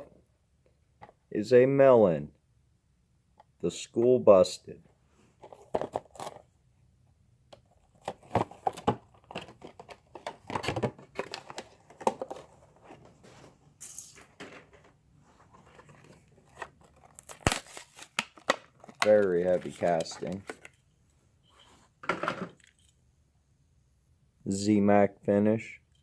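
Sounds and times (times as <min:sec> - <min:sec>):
plastic packaging crinkling and tearing: 0:16.0 - 0:20.6.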